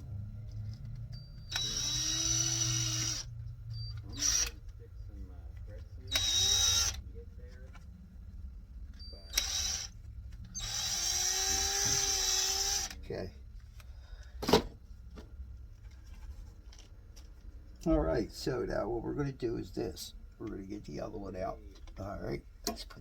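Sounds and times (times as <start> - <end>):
electric hand drill whining: 1.3 - 3.4, 4.1 - 4.5, 6.1 - 7.0, 9.3 - 9.9, 10.6 - 13.0.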